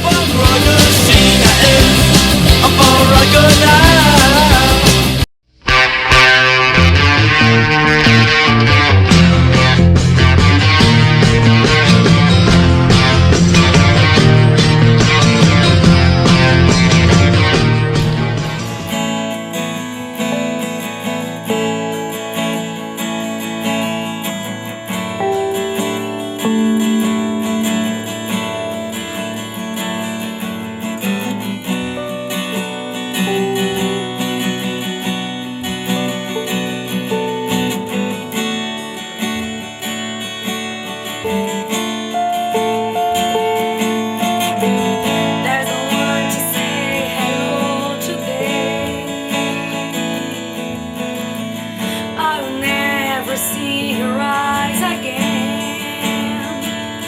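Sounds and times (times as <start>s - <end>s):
strummed acoustic guitar: 0.0s - 57.0s
melody of held notes: 25.0s - 39.7s, 40.6s - 51.0s.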